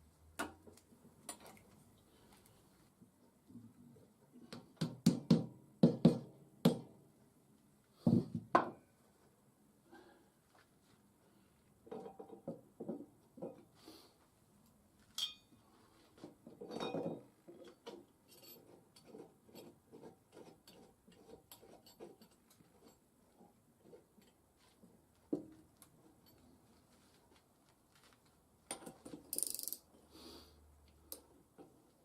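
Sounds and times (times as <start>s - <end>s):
metal tools clinking: 15.1s - 15.6s.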